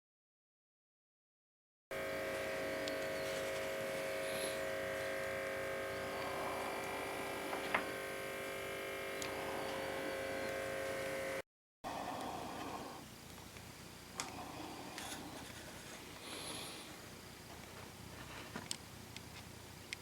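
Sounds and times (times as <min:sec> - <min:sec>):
small electric motor humming: 0:01.9 - 0:13.1.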